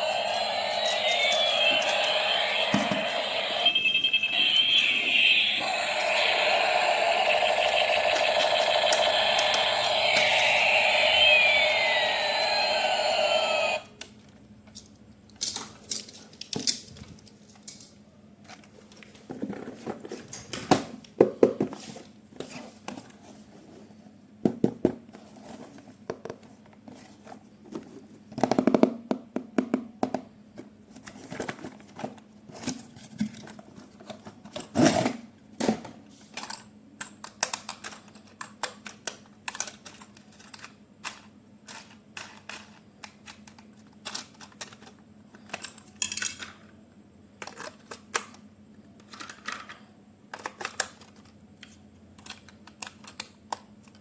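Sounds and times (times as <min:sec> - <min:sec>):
loud steady sound: 0:00.0 - 0:13.9
plastic toy parts handled: 0:14.2 - 0:18.7, 0:36.3 - 0:46.5, 0:49.0 - 0:54.0.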